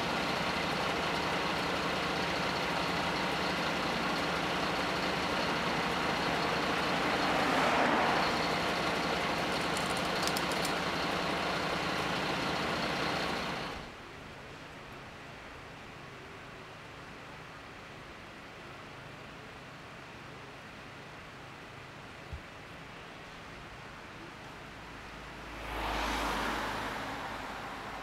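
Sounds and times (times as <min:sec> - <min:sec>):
steady engine noise: 0:00.0 - 0:14.0, 0:24.6 - 0:28.0.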